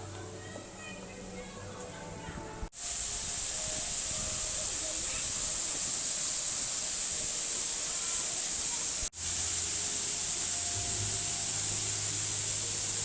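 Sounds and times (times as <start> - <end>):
faint distant music or voices: 0.0 - 13.0
steady high hiss: 2.7 - 13.0.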